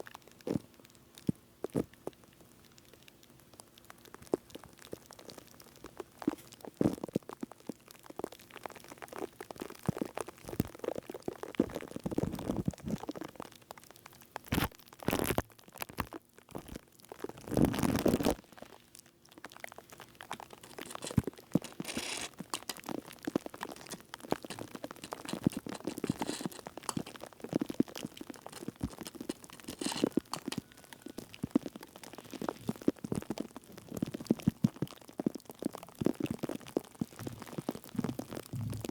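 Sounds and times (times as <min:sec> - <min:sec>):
crackling and crunching clicks: 0:14.5 - 0:16.1, 0:19.8 - 0:31.8.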